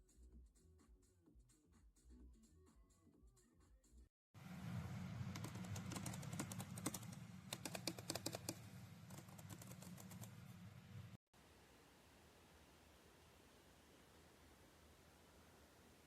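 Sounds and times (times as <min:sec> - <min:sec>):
low steady hum: 0:04.4 - 0:16.0
keyboard key clicks: 0:05.4 - 0:10.3.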